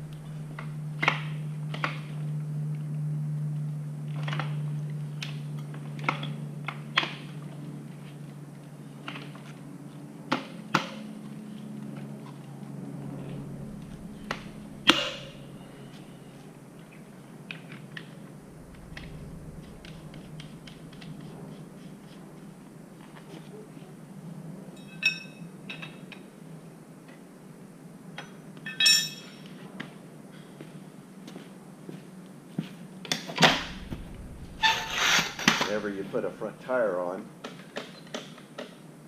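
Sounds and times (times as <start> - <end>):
steady low hum: 0.0 - 24.7, 33.4 - 36.9.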